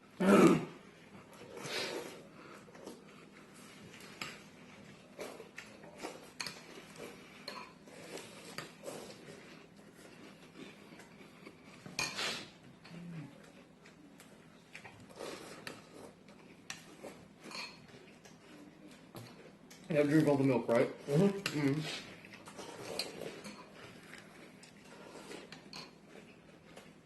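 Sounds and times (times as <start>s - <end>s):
cutlery clinking against bowls: 7.4s - 7.8s, 16.7s - 18.3s, 25.4s - 26.0s.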